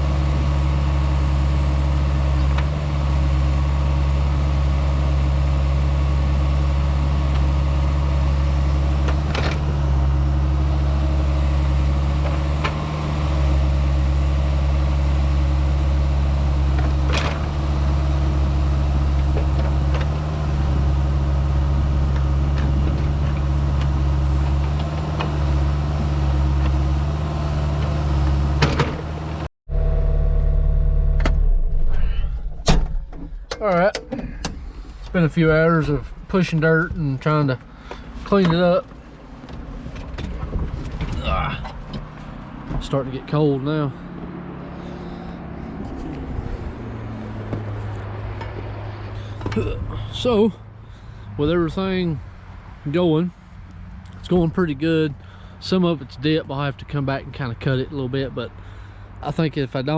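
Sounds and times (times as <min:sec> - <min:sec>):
diesel engine under load: 0:00.0 - 0:59.9.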